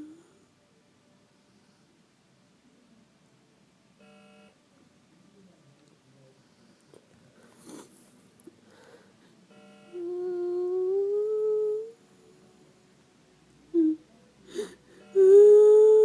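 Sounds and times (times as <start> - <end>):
person humming: 0.0 - 0.4, 10.0 - 12.0, 13.7 - 16.0.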